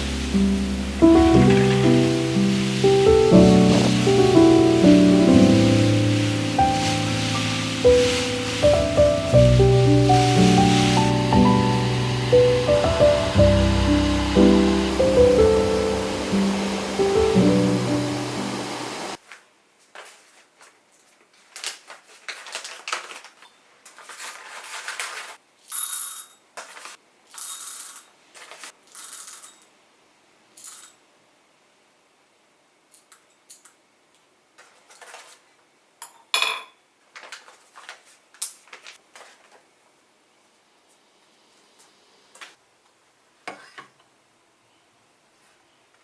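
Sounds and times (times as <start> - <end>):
short rustles: 5.0 - 11.6
dishes and utensils clinking: 36.0 - 36.8.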